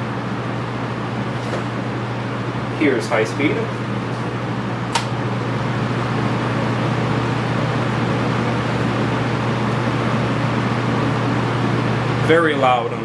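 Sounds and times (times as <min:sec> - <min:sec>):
box fan air rushing: 0:00.0 - 0:12.5
sharp click: 0:04.9 - 0:05.2.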